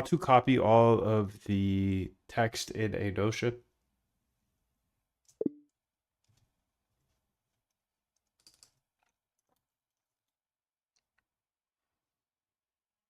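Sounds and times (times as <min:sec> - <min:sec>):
faint keyboard typing: 0:07.1 - 0:10.0.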